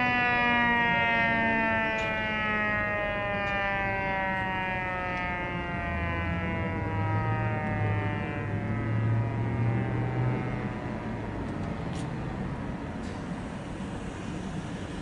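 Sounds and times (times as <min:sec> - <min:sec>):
warning siren winding down: 0:00.0 - 0:11.5.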